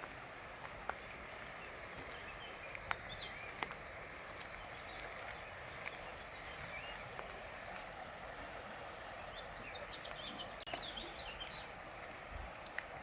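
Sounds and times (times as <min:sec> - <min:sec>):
river water rushing: 0:00.0 - 0:13.0
birds chirping: 0:01.0 - 0:08.2, 0:09.1 - 0:12.2.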